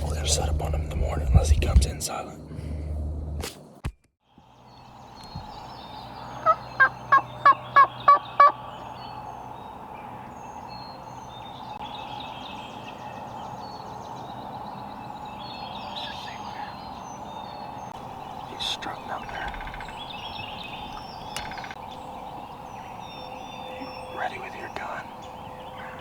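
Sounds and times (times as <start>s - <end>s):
small birds singing faintly: 4.2s - 26.0s
turkey yelping: 6.4s - 8.6s.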